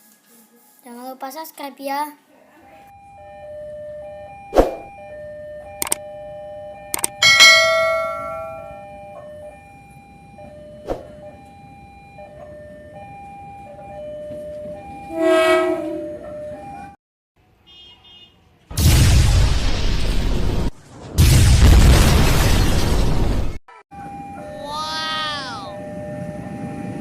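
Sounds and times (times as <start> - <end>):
level crossing alarm ringing: 2.9 - 17.0, 24.0 - 27.0
sharp clicks: 5.8 - 6.0, 6.9 - 7.2
train horn: 14.9 - 16.4.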